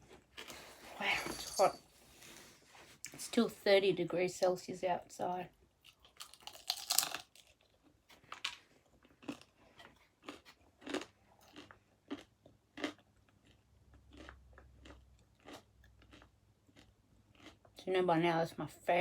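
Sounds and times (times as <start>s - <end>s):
crunchy chewing: 5.8s - 17.8s
pizza crunching bite: 5.9s - 17.6s.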